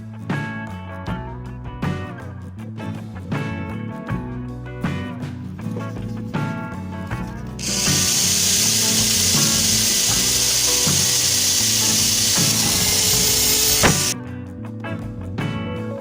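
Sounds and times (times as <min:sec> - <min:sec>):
power tool on metal: 0:07.6 - 0:14.2.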